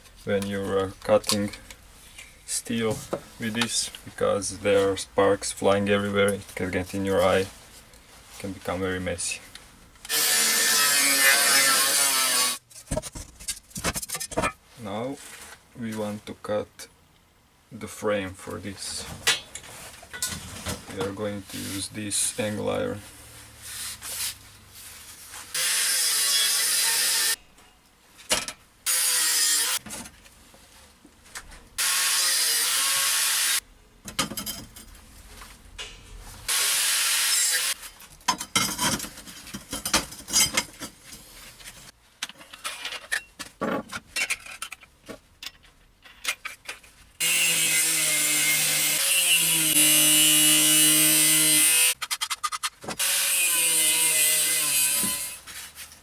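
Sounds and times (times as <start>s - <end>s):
angle grinder cutting steel: 10.1s - 12.6s, 25.5s - 27.4s, 28.9s - 29.8s, 31.8s - 33.6s, 36.5s - 37.8s, 47.2s - 52.0s, 53.0s - 55.4s.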